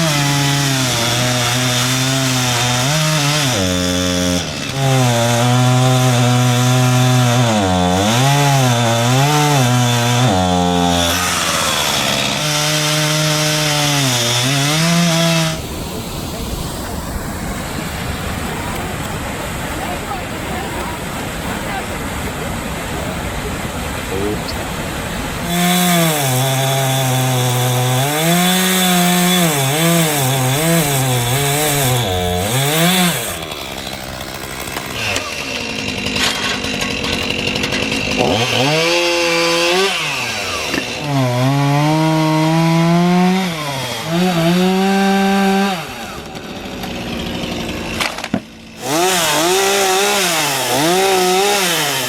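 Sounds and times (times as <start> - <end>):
chainsaw cutting wood: 0.0 - 52.0.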